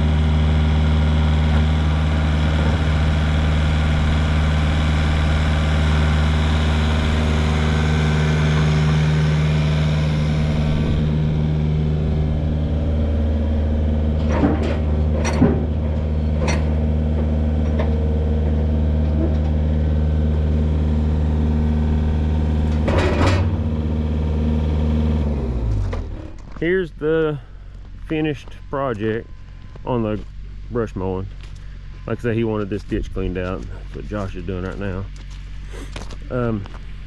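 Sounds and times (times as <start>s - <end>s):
engine idling: 0.0s - 37.0s.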